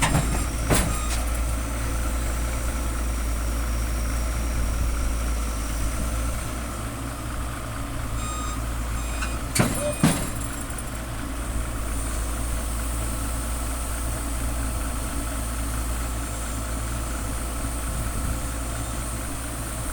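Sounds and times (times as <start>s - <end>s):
excavator diesel engine running: 0.0s - 19.9s
short beeping: 0.5s - 1.4s, 8.2s - 10.0s.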